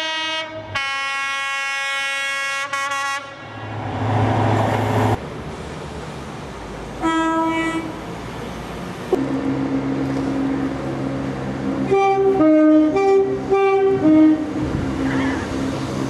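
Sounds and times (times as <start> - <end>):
train horn: 0.0 - 3.6, 7.0 - 7.9, 11.8 - 15.5
train rushing noise: 2.7 - 16.0.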